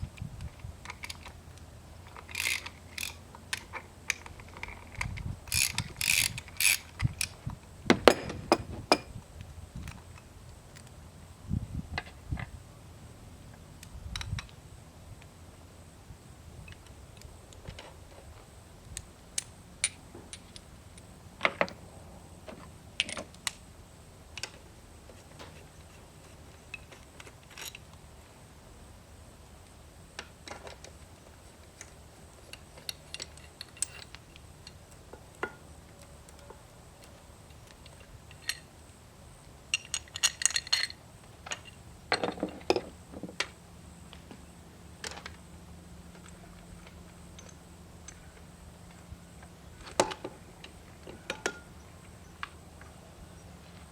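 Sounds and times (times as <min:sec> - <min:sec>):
tools and metal parts clinking: 0:02.0 - 0:09.2, 0:25.4 - 0:27.9, 0:31.8 - 0:38.7, 0:39.7 - 0:43.5, 0:46.2 - 0:48.3, 0:49.8 - 0:51.7.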